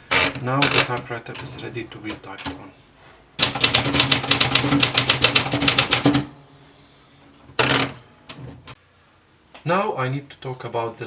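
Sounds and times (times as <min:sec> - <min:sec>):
typewriter carriage stroke: 0:03.4 - 0:06.3
typewriter click: 0:03.4 - 0:06.3
typewriter key strikes: 0:03.4 - 0:06.3.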